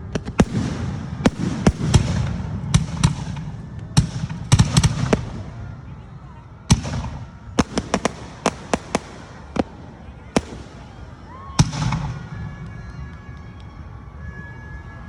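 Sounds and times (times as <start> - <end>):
fireworks cracks and bangs: 0.0 - 13.8
low rumbling echo: 0.0 - 14.1.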